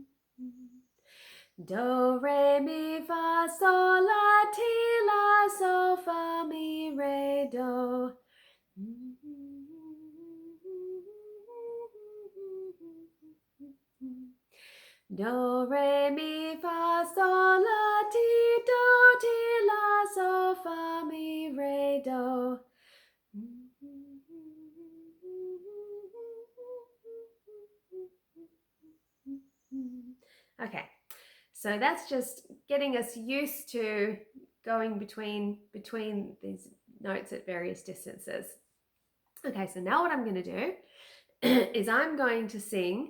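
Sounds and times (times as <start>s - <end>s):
woman humming a scale: 0.0s - 0.9s, 8.8s - 14.4s, 23.4s - 30.2s
woman singing a scale: 1.6s - 8.2s, 8.8s - 14.3s, 15.1s - 22.6s, 23.4s - 28.1s.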